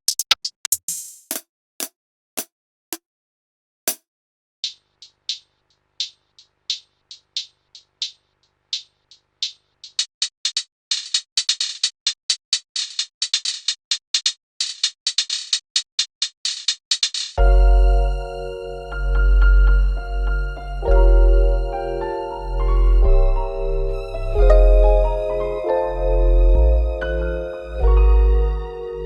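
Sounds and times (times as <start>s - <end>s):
drum machine hi-hat ticks: 0.0s - 1.4s, 4.6s - 17.5s.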